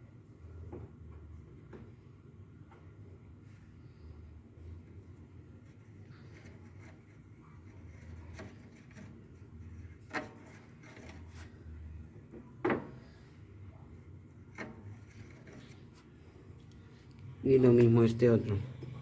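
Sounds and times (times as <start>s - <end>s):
low steady hum: 0.0s - 19.0s.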